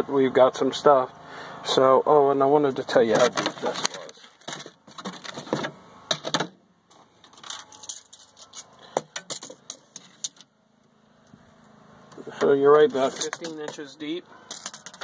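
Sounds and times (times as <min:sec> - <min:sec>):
clicks and rattles in fridge: 0:03.1 - 0:06.6.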